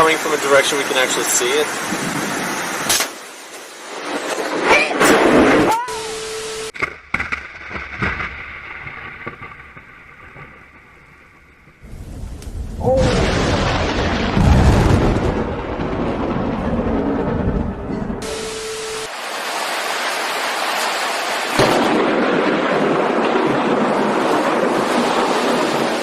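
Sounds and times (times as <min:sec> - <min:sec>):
lightning strike crack: 0:00.0 - 0:05.8, 0:06.7 - 0:26.0
heavy rain: 0:00.0 - 0:26.0
thunder rumbling: 0:03.8 - 0:19.2, 0:21.4 - 0:26.0.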